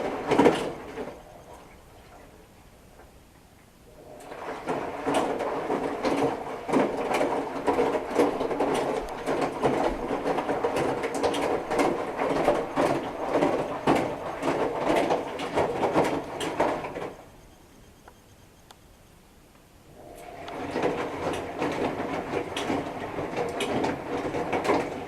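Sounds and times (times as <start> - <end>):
washing machine drum tumbling: 0.0 - 1.3, 4.0 - 17.3, 20.0 - 25.0.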